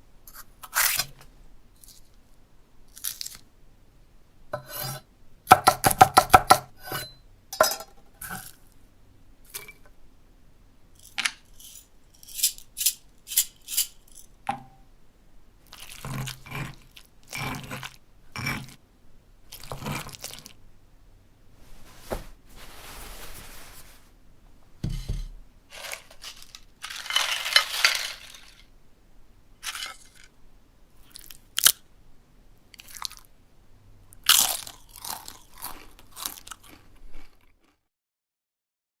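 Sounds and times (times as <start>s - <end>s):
food crunching: 15.6s - 18.8s, 19.5s - 20.6s, 32.8s - 33.3s, 34.2s - 37.8s.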